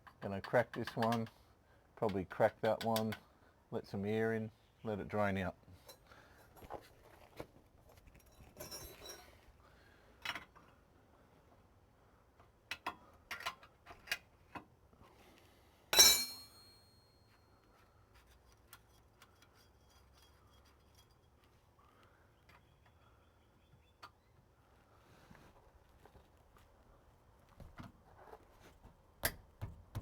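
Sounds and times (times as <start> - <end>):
metal spanner clinking on bolt: 16.0 - 16.8.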